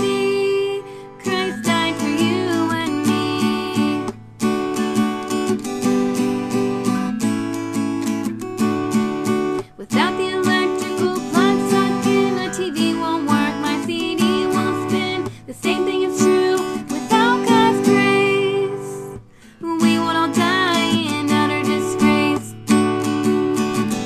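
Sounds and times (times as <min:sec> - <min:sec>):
woman singing: 0:00.0 - 0:04.2, 0:09.7 - 0:24.0
acoustic guitar strumming: 0:00.0 - 0:24.0.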